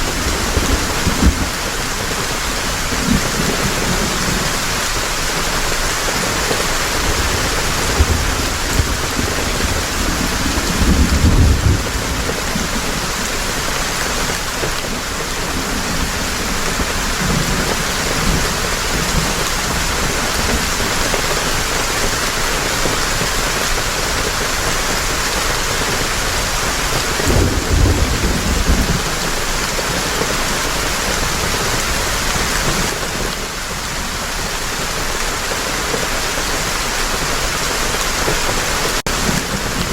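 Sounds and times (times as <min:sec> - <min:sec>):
thunder rolling: 0:00.0 - 0:05.0, 0:05.9 - 0:21.6, 0:25.8 - 0:34.1
heavy rain falling: 0:00.0 - 0:39.9.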